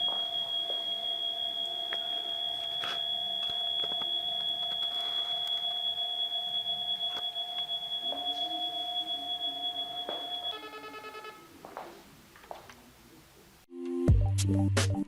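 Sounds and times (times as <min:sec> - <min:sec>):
doorbell intercom ringtone: 0:00.0 - 0:11.9.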